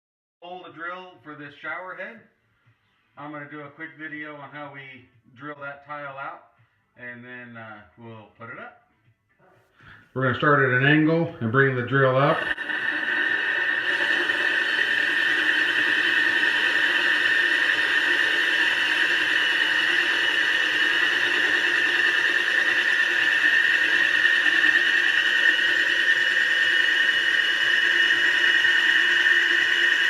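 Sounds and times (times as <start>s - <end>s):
hole saw grinding through tile: 11.9s - 30.0s.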